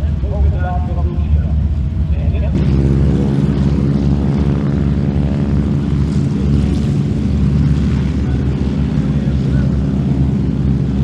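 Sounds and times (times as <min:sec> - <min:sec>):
propeller plane engine running: 0:00.0 - 0:11.0.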